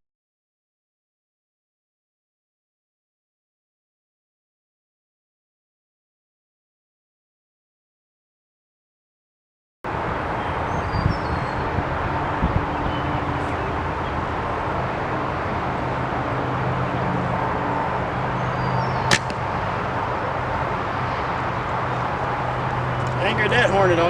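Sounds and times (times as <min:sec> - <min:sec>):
wind buffeting microphone: 0:09.9 - 0:15.9
bow shooting arrow snap: 0:19.1 - 0:19.7.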